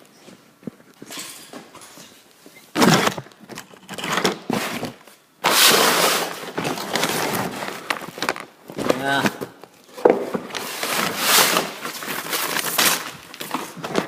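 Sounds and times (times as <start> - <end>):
rustling and clattering handling: 6.1 - 14.0.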